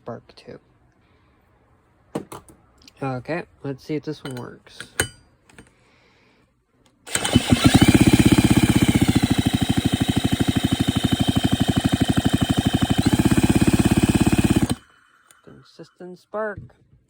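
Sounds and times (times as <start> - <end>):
chainsaw engine being turned over: 7.1 - 15.4
motor whine: 7.1 - 15.4.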